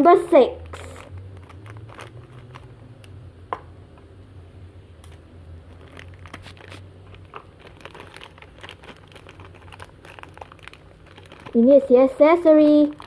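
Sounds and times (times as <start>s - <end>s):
plastic bag tearing and crinkling: 0.6s - 2.9s, 5.6s - 13.0s.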